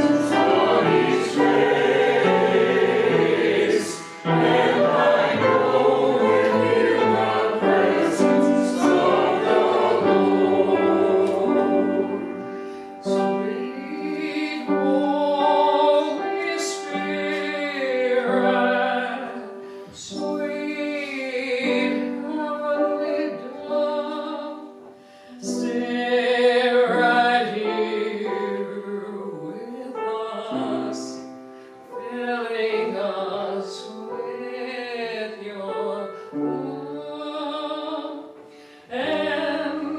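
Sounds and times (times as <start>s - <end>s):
group singing a hymn: 0.0s - 24.7s, 25.4s - 31.3s, 36.4s - 39.9s
held accompanying notes: 0.0s - 26.1s.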